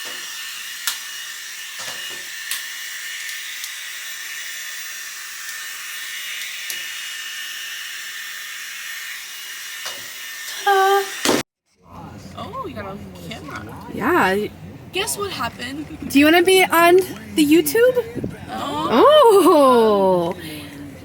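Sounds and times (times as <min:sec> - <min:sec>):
hot-air styler whine and hiss: 0:00.0 - 0:11.4.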